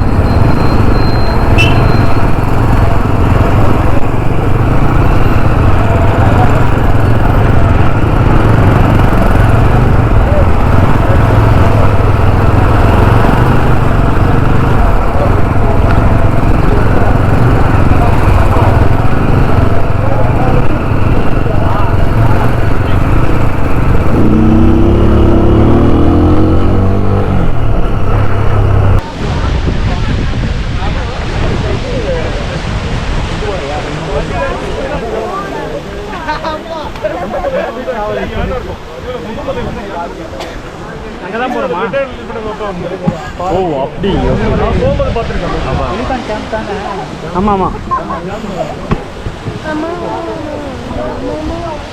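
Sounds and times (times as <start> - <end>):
motorcycle engine drone: 0.0 - 33.8
wind rush on microphone: 0.0 - 36.1, 43.5 - 48.1, 48.7 - 51.9.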